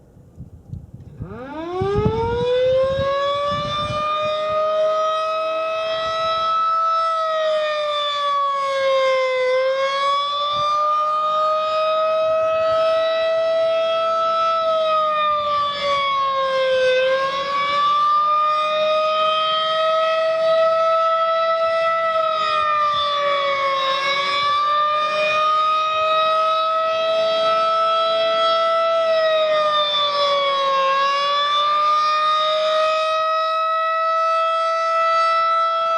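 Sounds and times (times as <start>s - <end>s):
rotating warning siren: 1.0s - 35.9s.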